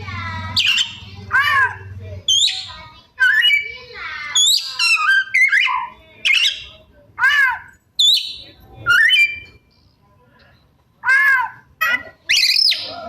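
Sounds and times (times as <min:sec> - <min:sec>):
bird singing whistled phrases: 0:00.6 - 0:01.0, 0:02.3 - 0:03.8, 0:04.4 - 0:06.7, 0:08.0 - 0:09.5, 0:12.3 - 0:13.0.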